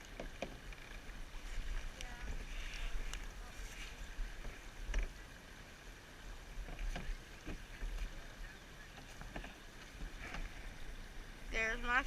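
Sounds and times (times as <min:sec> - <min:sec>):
light knocks against canoe: 0:00.0 - 0:05.2, 0:06.6 - 0:10.8.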